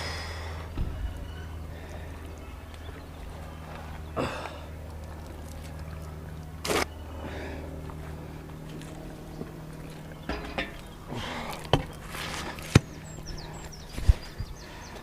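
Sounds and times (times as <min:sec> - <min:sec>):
bird chirping: 0:00.5 - 0:08.3, 0:08.9 - 0:15.0
rustling and scraping: 0:11.6 - 0:13.0.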